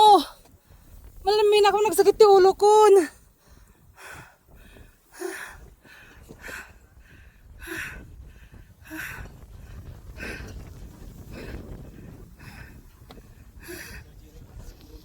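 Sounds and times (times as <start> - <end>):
person breathing hard: 3.4 - 14.2.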